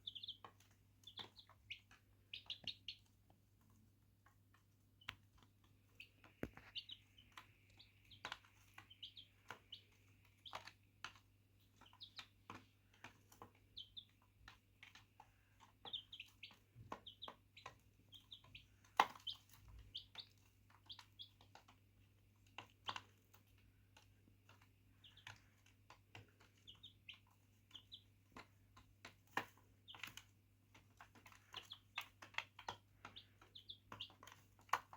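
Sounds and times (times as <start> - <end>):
chicks peeping: 0.0 - 34.9.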